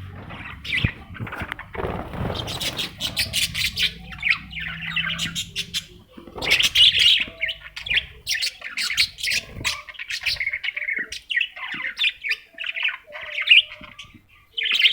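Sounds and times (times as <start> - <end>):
baby parrots chirping and squawking: 0.0 - 14.9.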